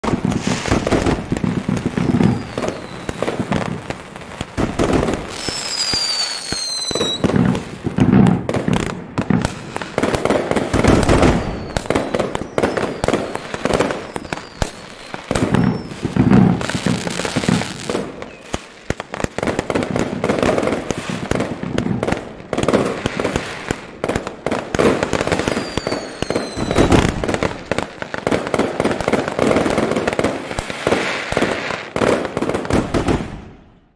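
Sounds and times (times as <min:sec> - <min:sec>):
falling firework whistles: 0:00.0 - 0:19.3, 0:22.6 - 0:28.3
firework shells booming and crackling: 0:00.0 - 0:33.9.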